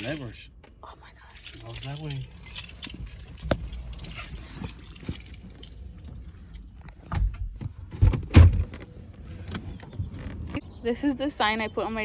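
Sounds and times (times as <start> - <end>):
keys jingling: 0.0 - 0.4, 1.2 - 7.0.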